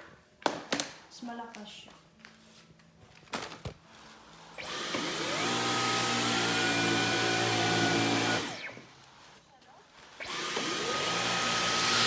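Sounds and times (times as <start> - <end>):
vacuum cleaner motor whine: 4.0 - 9.3, 10.1 - 12.0.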